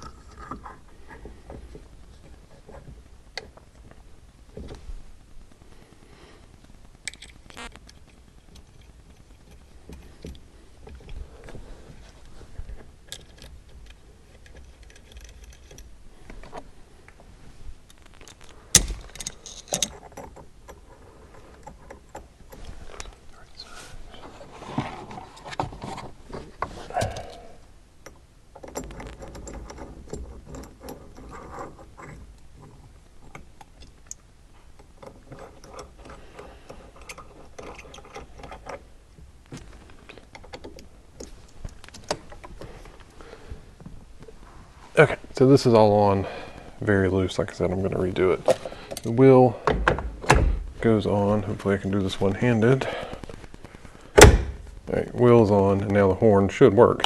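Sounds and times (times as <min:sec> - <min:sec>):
tools and parts clicking and rattling: 0:00.0 - 0:03.9, 0:07.0 - 0:16.7, 0:17.8 - 0:23.2, 0:25.0 - 0:44.3, 0:48.4 - 0:50.4.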